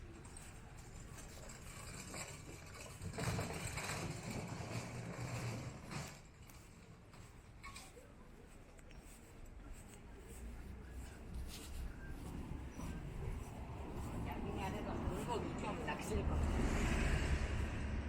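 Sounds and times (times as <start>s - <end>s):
motor vehicle passing by: 12.5s - 18.0s.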